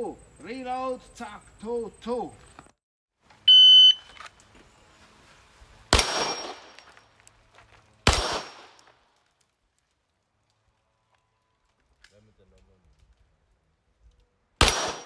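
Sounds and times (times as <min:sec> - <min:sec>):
shot timer beep: 0:03.5 - 0:04.1
pistol shots: 0:05.9 - 0:06.9, 0:08.0 - 0:09.0, 0:14.6 - 0:15.0.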